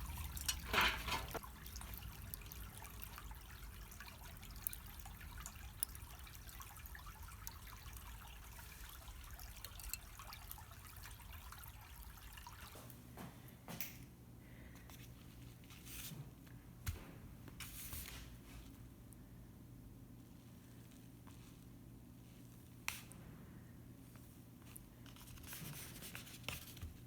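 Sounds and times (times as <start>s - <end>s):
charcoal fire crackling and sizzling: 0.0s - 10.2s.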